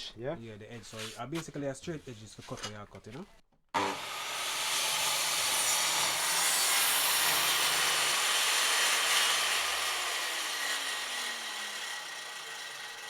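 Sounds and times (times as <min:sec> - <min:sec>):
circular saw cutting wood: 0:03.8 - 0:13.0.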